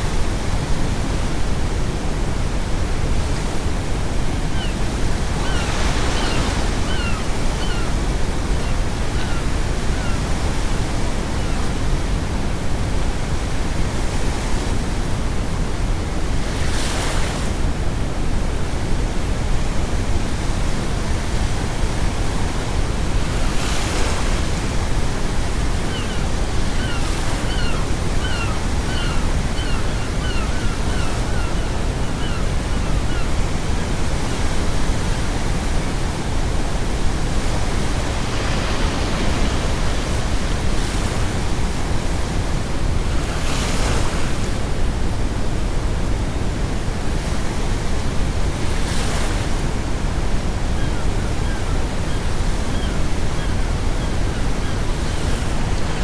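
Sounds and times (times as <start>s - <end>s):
sea waves washing on shore: 0.0s - 56.0s
seagull calling: 5.4s - 8.0s, 8.6s - 10.2s, 25.9s - 33.9s, 50.8s - 56.0s.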